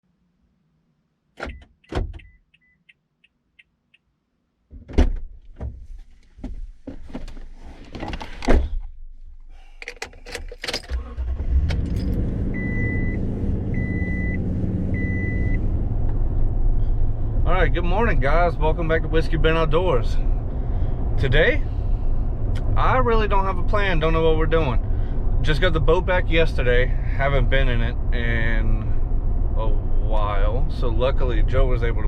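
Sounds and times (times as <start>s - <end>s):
car door thuds: 1.4s - 2.3s, 4.7s - 5.8s
clunks and handling noises: 4.7s - 8.9s, 9.7s - 11.1s
engine starting and idling: 9.8s - 14.4s.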